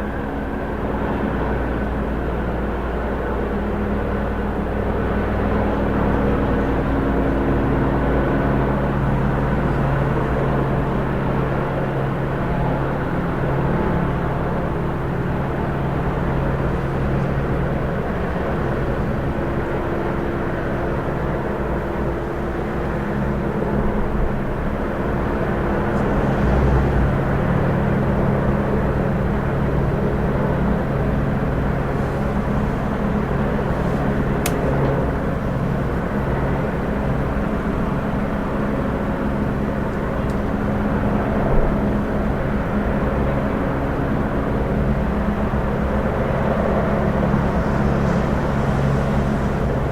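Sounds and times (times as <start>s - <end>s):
helicopter hovering: 27.0s - 49.9s
sharp click: 34.4s - 35.0s.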